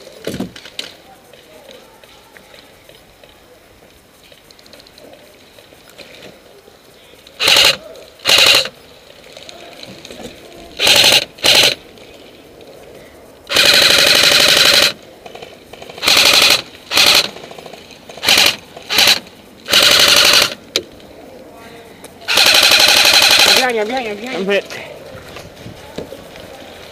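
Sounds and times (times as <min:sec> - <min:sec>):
airsoft gun firing bursts: 0:07.4 - 0:08.7, 0:10.8 - 0:11.8, 0:13.5 - 0:20.6, 0:22.3 - 0:23.8.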